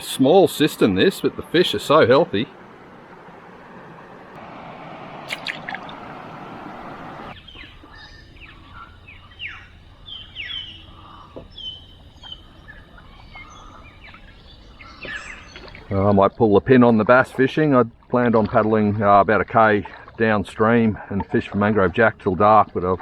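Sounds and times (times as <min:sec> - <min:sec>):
splashy clicks: 0:00.0 - 0:10.0, 0:10.8 - 0:23.0
birds whistling and chirping: 0:00.0 - 0:16.6
running water: 0:00.0 - 0:23.0.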